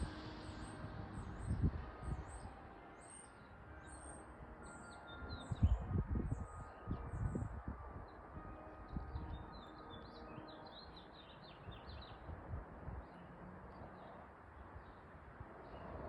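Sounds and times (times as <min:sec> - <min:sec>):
low uneven rumble: 0:00.0 - 0:02.9.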